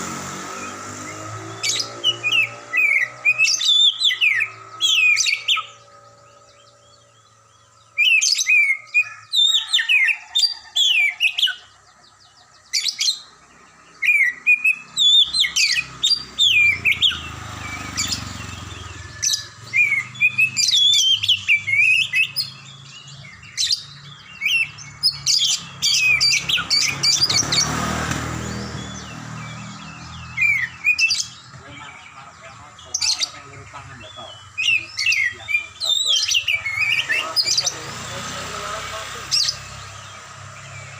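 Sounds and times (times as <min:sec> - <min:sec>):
bird whistled chirps: 0:01.8 - 0:11.7, 0:12.6 - 0:27.6, 0:28.5 - 0:31.5, 0:34.2 - 0:37.7.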